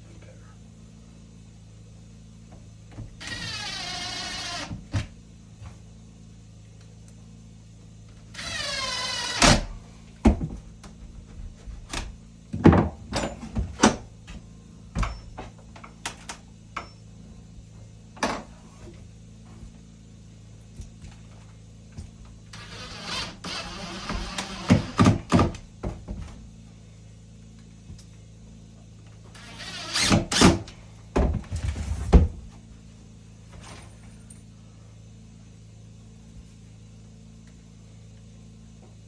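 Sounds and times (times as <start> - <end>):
power tool motor bogging: 22.6 - 25.3.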